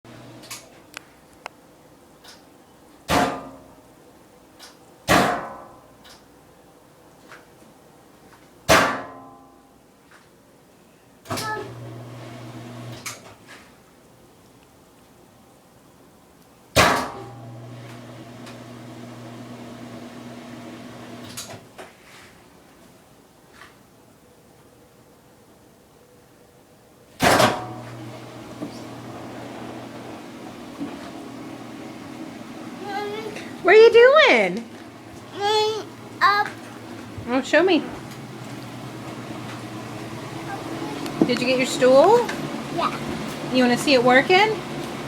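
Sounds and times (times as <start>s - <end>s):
washing machine motor humming: 0.1s - 0.5s, 11.4s - 13.0s, 17.2s - 21.3s, 27.4s - 33.8s, 34.7s - 45.0s
loud clunk: 16.8s - 17.3s, 27.2s - 27.8s.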